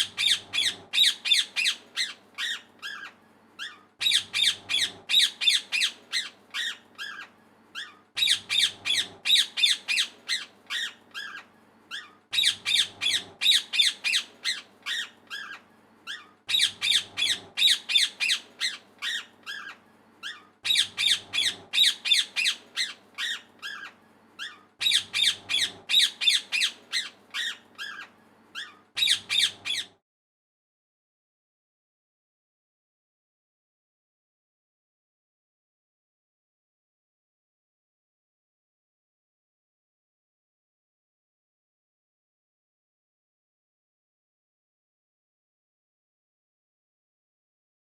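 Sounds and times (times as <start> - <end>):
parrot squawking: 0.0 - 30.0.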